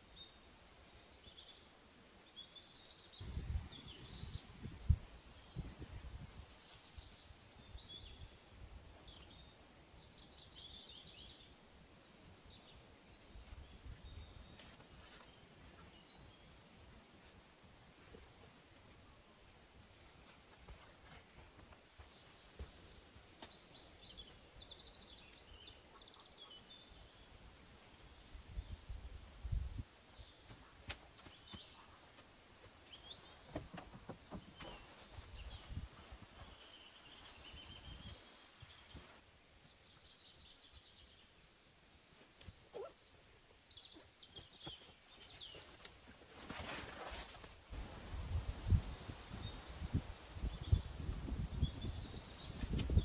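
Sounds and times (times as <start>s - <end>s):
faint small bird chirps: 34.5s - 47.4s.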